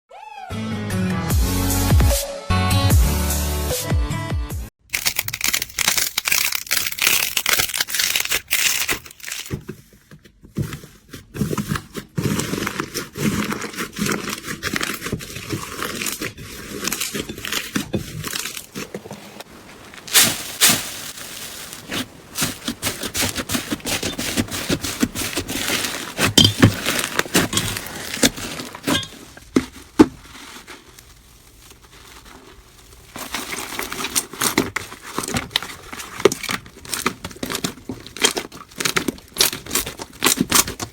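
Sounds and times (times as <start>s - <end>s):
slime crackling and popping: 4.8s - 9.5s, 20.0s - 40.9s.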